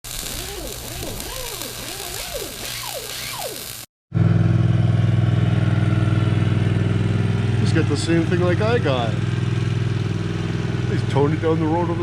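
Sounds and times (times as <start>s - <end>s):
squeaky rising and falling whines: 0.1s - 3.9s
small engine idling: 4.2s - 12.0s.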